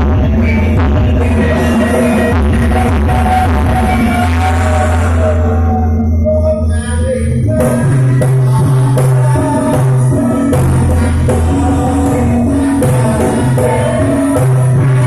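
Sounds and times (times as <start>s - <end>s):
bass line: 0.0s - 15.0s
loud music with steady beat: 0.0s - 15.0s.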